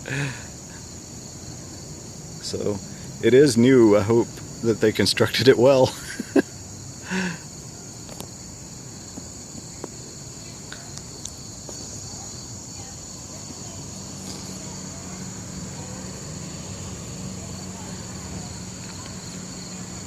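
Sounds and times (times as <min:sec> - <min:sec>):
high-pitched insect chorus: 0:00.0 - 0:20.0.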